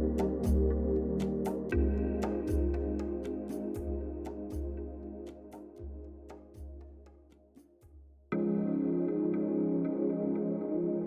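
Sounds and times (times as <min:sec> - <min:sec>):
deep bass drum: 0:00.0 - 0:03.2
sustained chords: 0:00.0 - 0:06.5.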